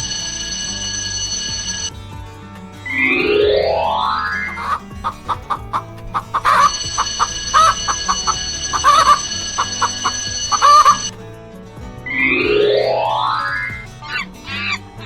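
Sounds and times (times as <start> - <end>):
steady high tone: 2.9 - 11.2
chickens clucking: 4.5 - 11.2.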